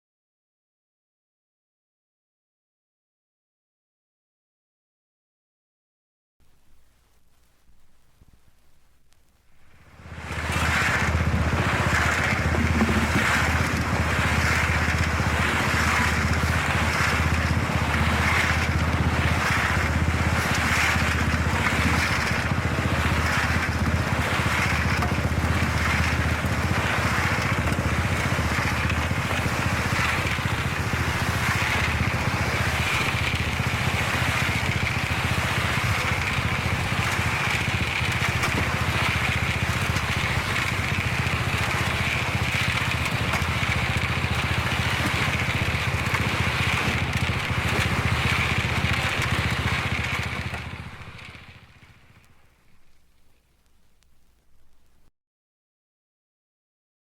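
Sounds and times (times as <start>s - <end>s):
motor running with hissing hum: 9.8s - 52.3s.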